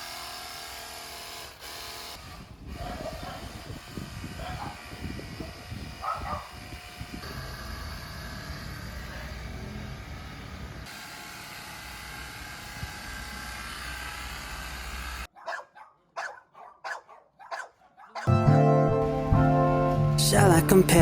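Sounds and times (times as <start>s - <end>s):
dog barking: 2.8s - 3.6s, 4.4s - 4.9s, 6.0s - 6.6s, 15.3s - 18.3s
music: 18.3s - 21.0s.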